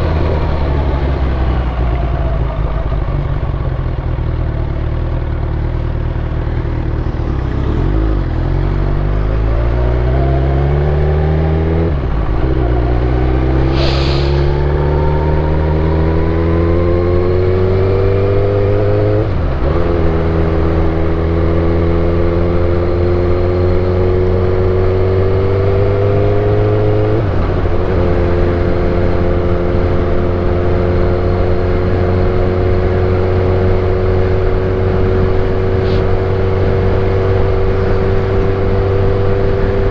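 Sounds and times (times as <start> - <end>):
motorcycle engine accelerating: 0.0 - 39.9
short hiss: 13.6 - 14.7.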